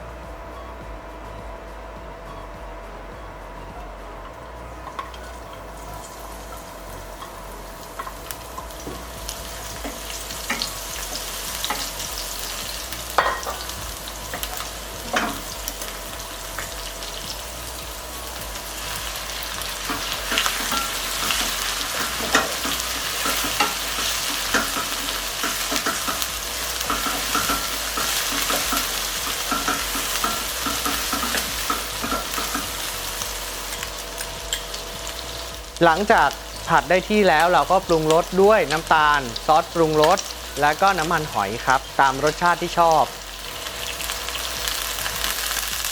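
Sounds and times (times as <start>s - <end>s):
stir-fry sizzling in a pan: 0.0s - 45.9s.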